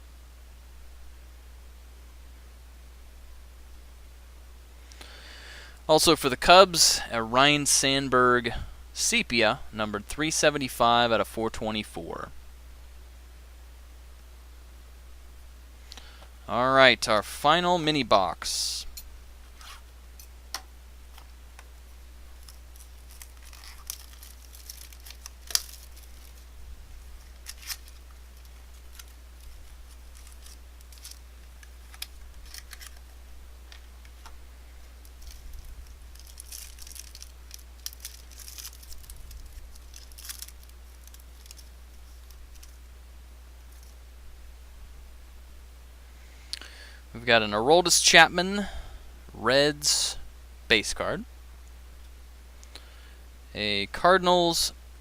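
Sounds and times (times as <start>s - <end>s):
steady low hum: 0.0s - 55.0s
packaging tearing and crinkling: 22.4s - 33.1s, 35.0s - 42.8s.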